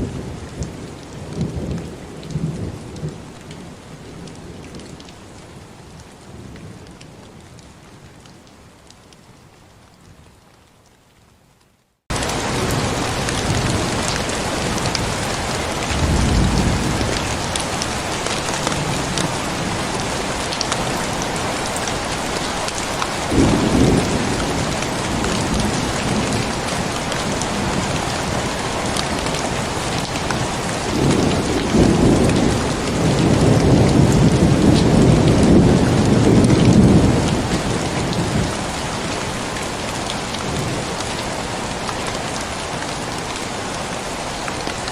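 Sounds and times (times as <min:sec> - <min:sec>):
heavy rain: 0:00.0 - 0:44.9
thunder rolling: 0:12.1 - 0:19.8, 0:23.3 - 0:38.5.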